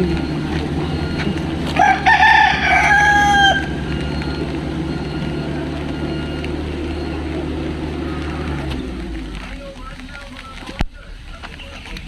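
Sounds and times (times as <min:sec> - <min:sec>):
rooster crowing: 0:00.0 - 0:07.1
heavy equipment engine drone: 0:00.0 - 0:12.0.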